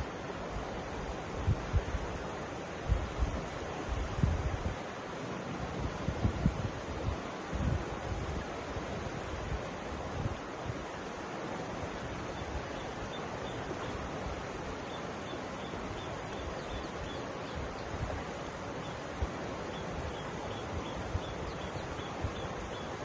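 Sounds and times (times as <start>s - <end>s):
river water rushing: 0.0s - 23.0s
wind buffeting microphone: 2.9s - 4.8s, 5.6s - 10.9s
faint high chirp: 12.4s - 14.0s, 14.8s - 17.9s.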